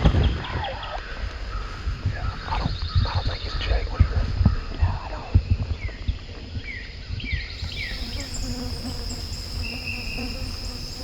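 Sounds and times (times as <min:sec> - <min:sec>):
bird chirps: 0:07.5 - 0:11.0
insects buzzing: 0:07.5 - 0:11.0.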